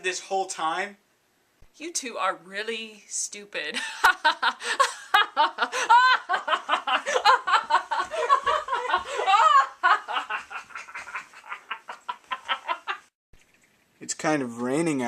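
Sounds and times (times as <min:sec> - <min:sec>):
hearty laughter: 0:03.8 - 0:13.1.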